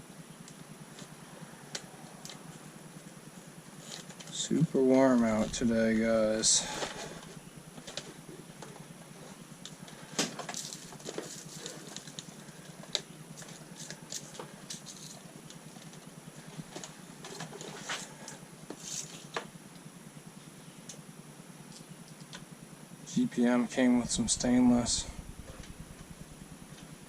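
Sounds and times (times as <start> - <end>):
small metal parts and tools clicking: 10.4 - 16.0.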